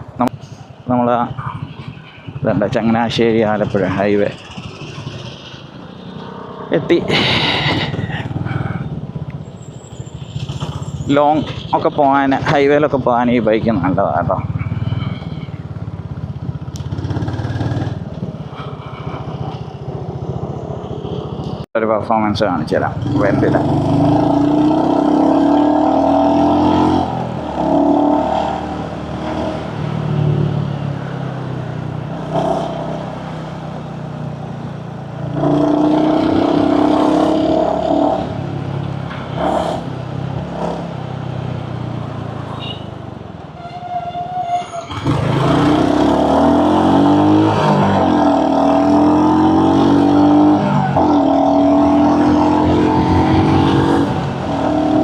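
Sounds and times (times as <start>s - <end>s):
motorcycle engine accelerating: 13.8s - 21.6s, 22.8s - 31.3s, 35.1s - 42.3s, 45.0s - 55.0s.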